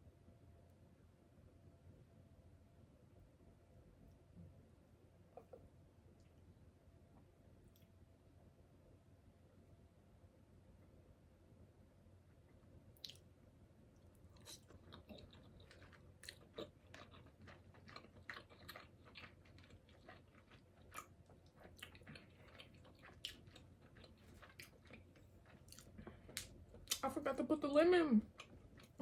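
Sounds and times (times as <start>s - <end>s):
person chewing food: 13.0s - 13.3s, 14.0s - 27.0s, 28.2s - 29.0s.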